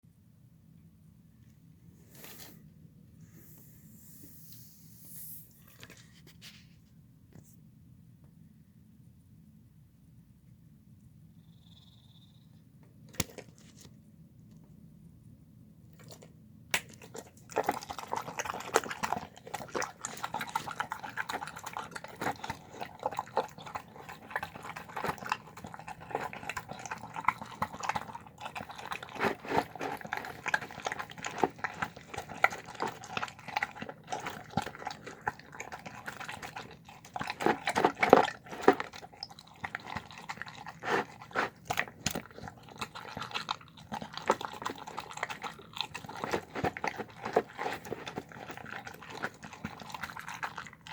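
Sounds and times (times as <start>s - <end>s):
dog chewing wet food: 15.9s - 50.9s.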